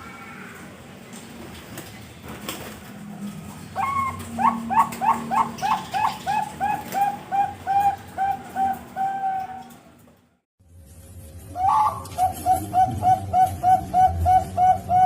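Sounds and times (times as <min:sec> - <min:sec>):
dove cooing: 0:03.7 - 0:09.9, 0:11.6 - 0:15.0.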